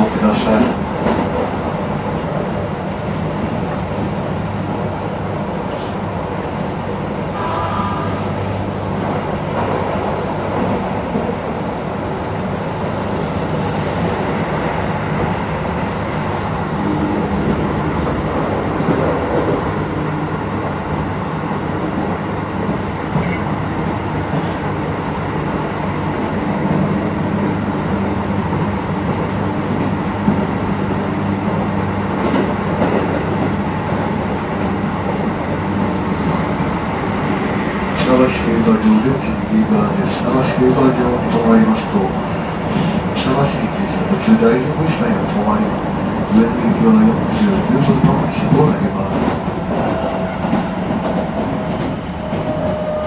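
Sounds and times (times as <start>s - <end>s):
train wheels rumbling on rail: 0.0s - 53.0s.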